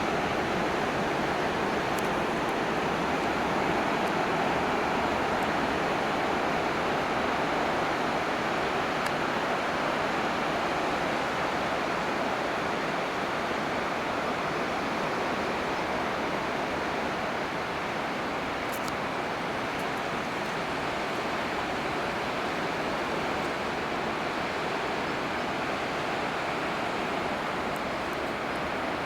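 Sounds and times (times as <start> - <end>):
ocean waves breaking: 0.0 - 8.8.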